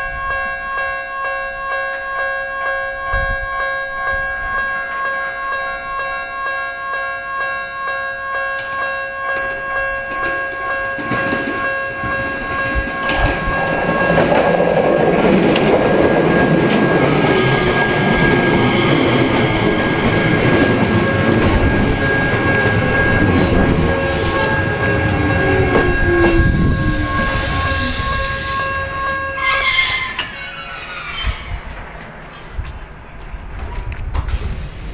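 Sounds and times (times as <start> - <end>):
level crossing warning bell: 0.0 - 30.5
electric train passing: 8.4 - 34.9
wheels clattering on rails: 8.6 - 34.5.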